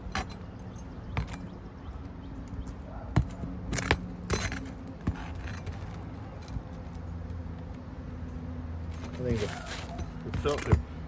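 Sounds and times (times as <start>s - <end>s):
metallic clinks and scrapes: 2.6s - 7.0s, 8.8s - 10.8s.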